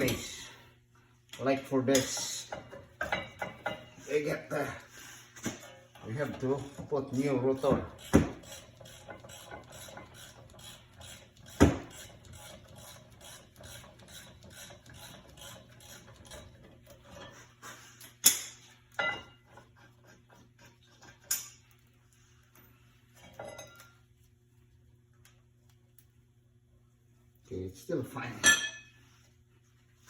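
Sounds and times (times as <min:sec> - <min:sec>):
metal tools clanking: 0:00.0 - 0:00.5, 0:01.8 - 0:10.8, 0:28.2 - 0:29.0.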